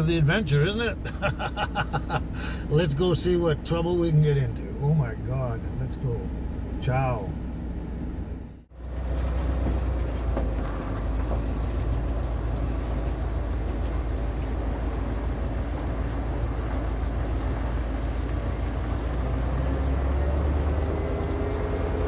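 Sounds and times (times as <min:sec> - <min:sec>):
truck engine running: 0:00.0 - 0:22.0.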